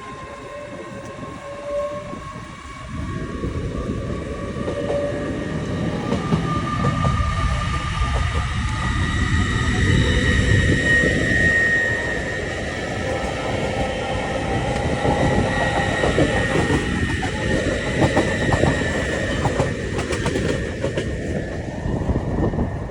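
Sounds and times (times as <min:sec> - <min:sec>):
high-speed train rumble: 0:00.0 - 0:22.9
train wheels clicking: 0:05.7 - 0:21.7.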